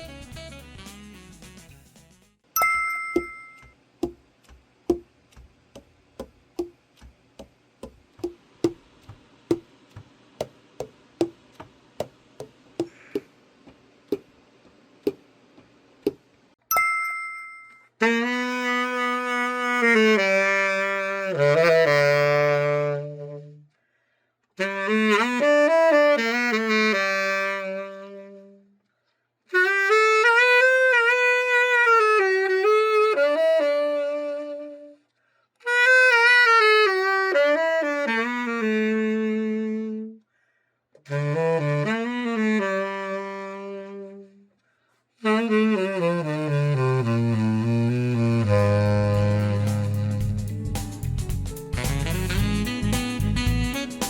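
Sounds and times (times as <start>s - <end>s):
tenor saxophone solo: 0.0s - 1.0s, 18.0s - 23.7s, 24.6s - 28.8s, 29.5s - 35.0s, 35.6s - 40.2s, 41.0s - 44.5s, 45.2s - 50.8s, 51.7s - 54.0s.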